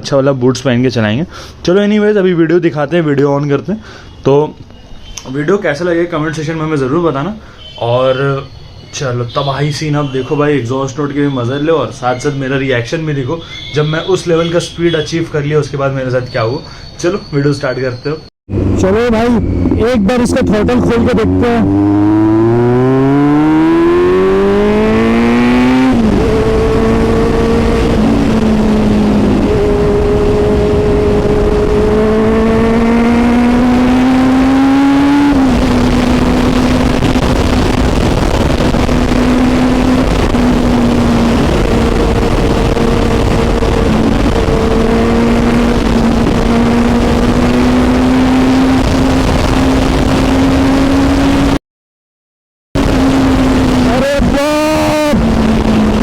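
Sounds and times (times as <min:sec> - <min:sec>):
heavy wind rush: 0:18.5 - 0:51.6, 0:52.8 - 0:56.0
motorcycle engine revving: 0:18.5 - 0:51.6, 0:52.8 - 0:56.0.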